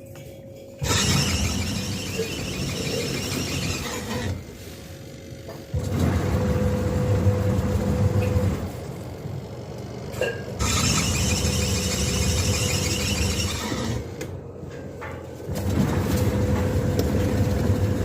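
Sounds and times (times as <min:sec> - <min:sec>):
washing machine low hum: 0:00.0 - 0:18.0
hissing whir: 0:00.8 - 0:04.6.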